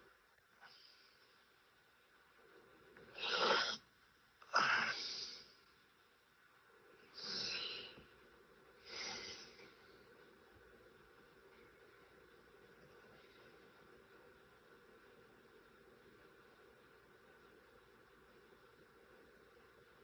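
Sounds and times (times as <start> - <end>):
person snoring: 3.1 - 3.8, 4.5 - 5.5, 7.2 - 8.0, 8.9 - 9.6.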